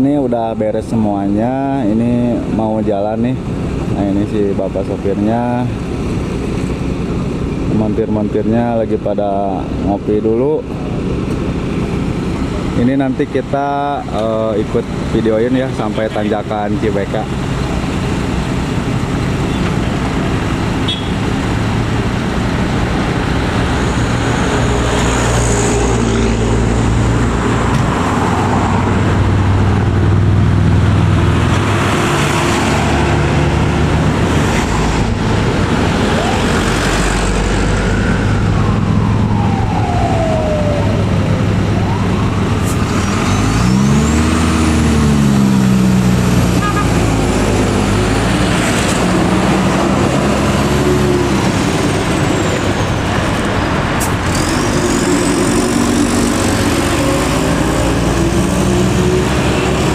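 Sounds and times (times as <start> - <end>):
road noise: 0.0 - 59.9
rising and falling tone: 23.2 - 52.5.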